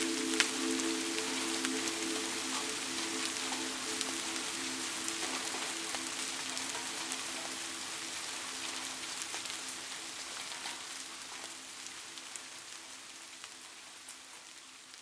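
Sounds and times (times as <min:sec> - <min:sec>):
raindrops ticking: 0:00.0 - 0:11.7
rain falling steadily: 0:00.0 - 0:15.0.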